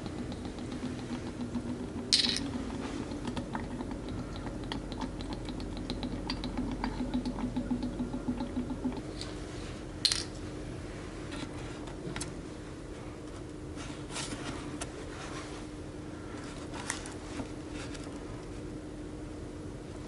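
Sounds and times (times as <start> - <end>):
metal tools clicking and clinking: 2.1 - 2.5.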